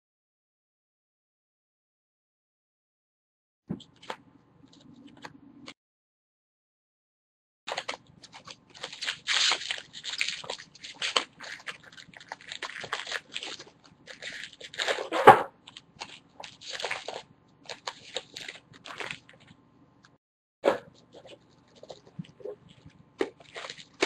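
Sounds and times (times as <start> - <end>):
cards rustling: 7.7 - 15.1, 15.7 - 19.6, 20.9 - 24.0
wrappers crinkling: 7.7 - 19.6, 20.9 - 24.0.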